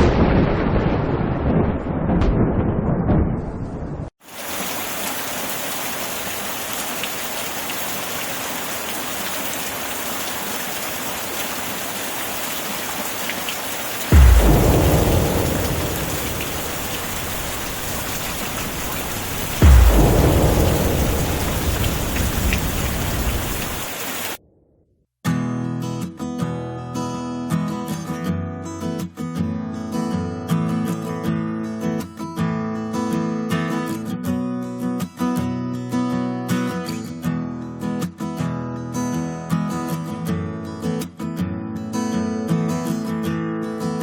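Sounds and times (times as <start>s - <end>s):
thunderclap: 0.0s - 5.5s, 8.0s - 24.4s
thunder rumbling: 0.0s - 24.4s
heavy rain: 4.2s - 24.4s.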